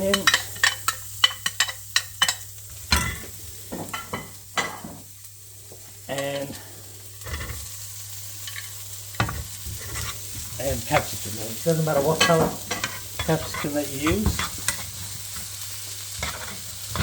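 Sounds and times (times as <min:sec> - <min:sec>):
onions sizzling in a pan: 0:00.0 - 0:17.0
utensil scraping a pan: 0:08.4 - 0:15.5, 0:16.1 - 0:17.0.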